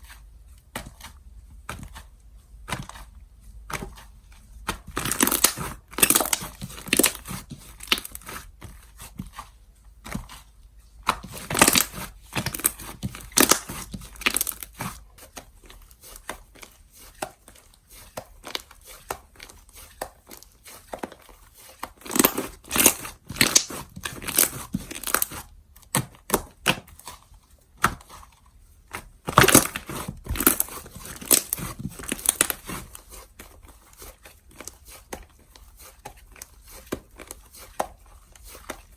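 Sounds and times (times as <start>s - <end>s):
slime crackling and popping: 4.8s - 8.3s, 11.1s - 14.8s, 22.0s - 25.4s, 29.3s - 32.8s.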